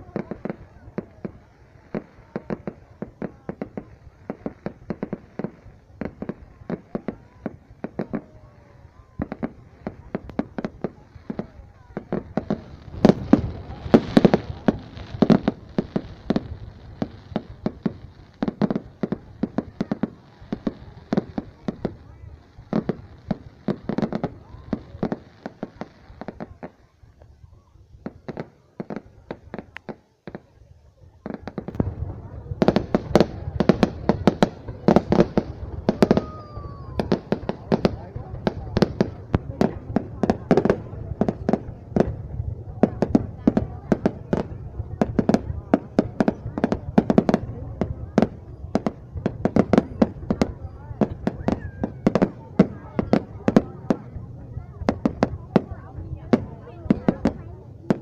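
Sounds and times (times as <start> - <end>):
fireworks bangs and cracks: 0.0 - 27.3, 28.0 - 30.5, 31.2 - 58.0.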